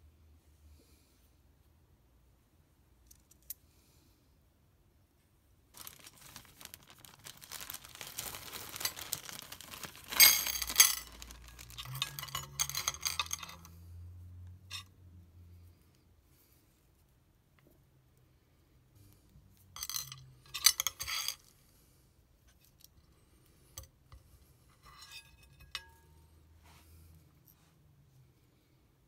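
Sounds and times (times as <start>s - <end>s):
metal parts scraping and clinking: 9.8s - 13.8s, 19.8s - 21.5s.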